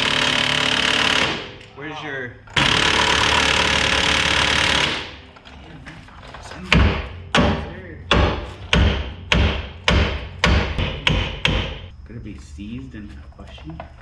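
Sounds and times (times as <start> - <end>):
impact wrench buzzing: 0.0 - 1.7, 2.5 - 5.4
hammer striking metal: 6.7 - 11.9.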